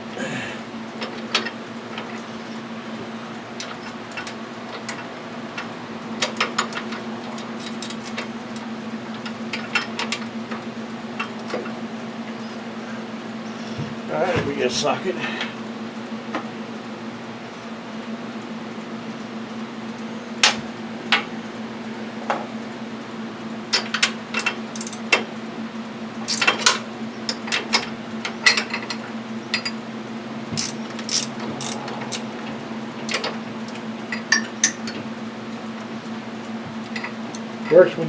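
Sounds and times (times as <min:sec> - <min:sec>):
metal hand tools clinking: 0:24.4 - 0:25.0, 0:26.2 - 0:26.8, 0:30.6 - 0:32.2
steady low hum: 0:28.0 - 0:37.8.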